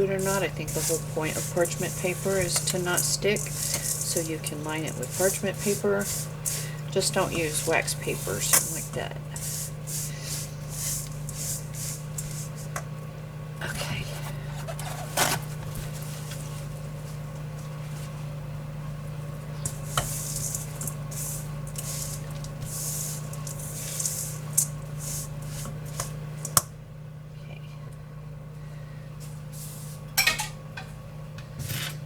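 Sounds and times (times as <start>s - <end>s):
spoon scraping in bowl: 0.0s - 12.8s, 19.7s - 26.1s
steady low hum: 0.0s - 32.0s.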